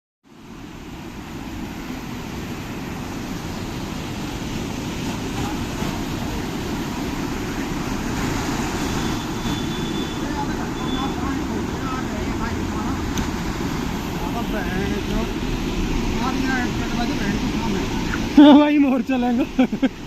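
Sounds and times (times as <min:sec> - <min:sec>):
wind rushing: 0:11.4 - 0:18.4.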